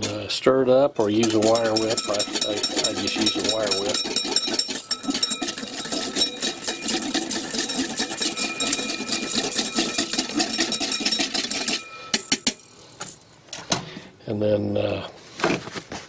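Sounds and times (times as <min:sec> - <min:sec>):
whisk clicking against bowl: 0:01.2 - 0:12.5.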